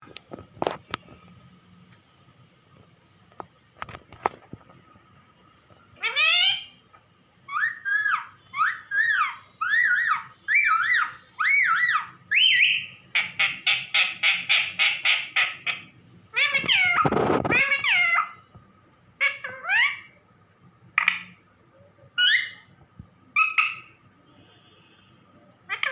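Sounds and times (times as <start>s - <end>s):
parrot calling: 6.0s - 6.8s, 7.5s - 18.4s, 19.2s - 20.2s, 22.2s - 22.7s, 23.3s - 24.0s, 25.7s - 25.9s.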